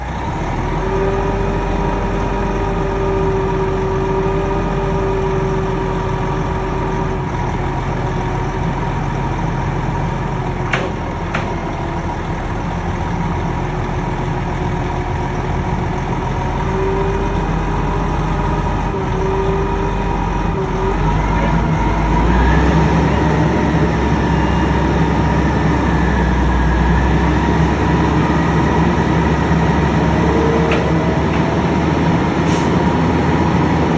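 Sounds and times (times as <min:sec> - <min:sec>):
large engine running: 0:00.0 - 0:33.9.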